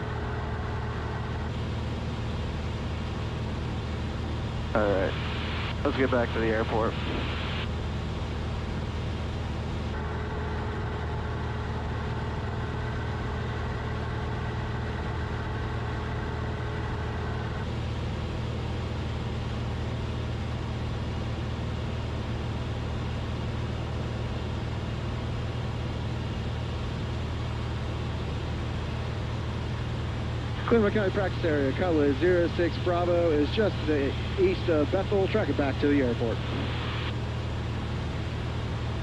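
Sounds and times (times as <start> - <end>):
propeller plane engine droning: 0.0 - 39.0
steady high-pitched tones: 30.5 - 38.9.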